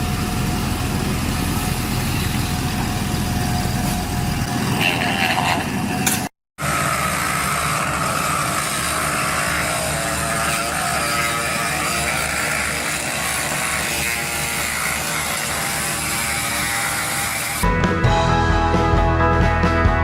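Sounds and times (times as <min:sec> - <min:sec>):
engine noise: 0:00.0 - 0:11.5.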